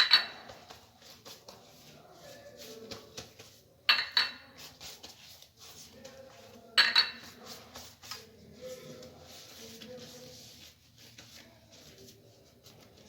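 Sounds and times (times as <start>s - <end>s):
utensil clinking against dishes: 3.9s - 4.5s, 6.8s - 7.4s.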